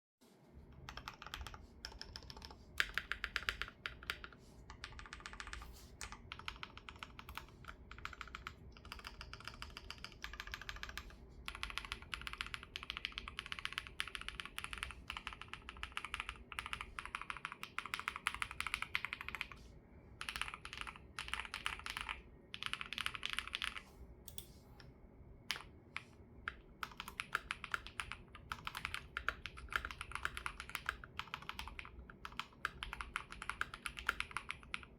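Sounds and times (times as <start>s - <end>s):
mechanical keyboard typing: 0.8s - 19.6s, 20.2s - 24.4s, 25.5s - 34.9s.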